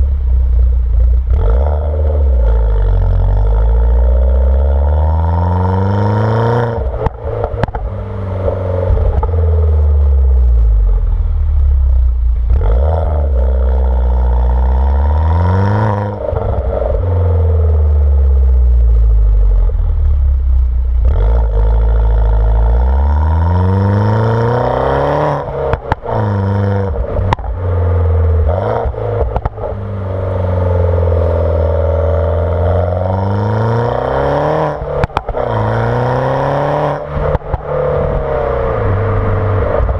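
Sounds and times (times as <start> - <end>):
car engine accelerating: 0.0 - 39.9
exhaust pops and crackles: 6.7 - 15.1, 17.7 - 22.9, 25.2 - 29.9, 34.6 - 35.8, 36.9 - 39.9.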